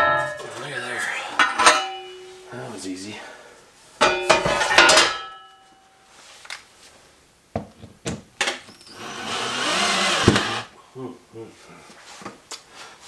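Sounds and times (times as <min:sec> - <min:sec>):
power drill running: 0:08.7 - 0:10.7.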